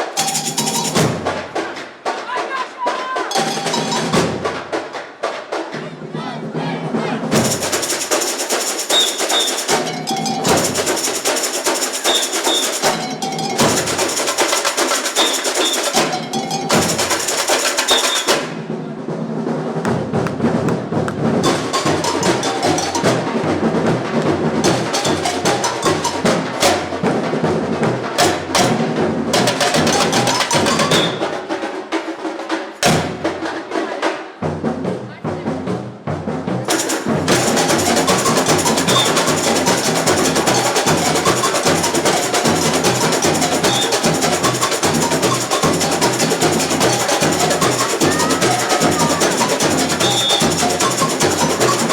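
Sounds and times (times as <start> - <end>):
samba drum corps: 0.0 - 51.9
high shaker rattling: 7.4 - 18.2, 36.7 - 51.9.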